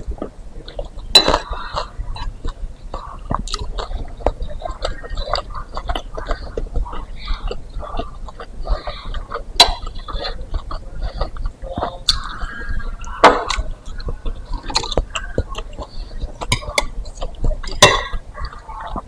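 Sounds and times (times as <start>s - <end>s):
person chewing soup: 0.0s - 19.0s.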